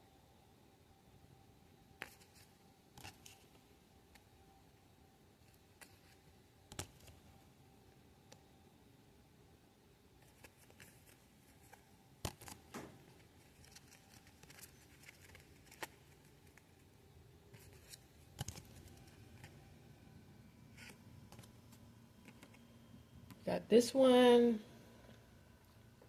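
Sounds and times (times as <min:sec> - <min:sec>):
cards rustling: 0:10.2 - 0:16.9, 0:17.5 - 0:19.6.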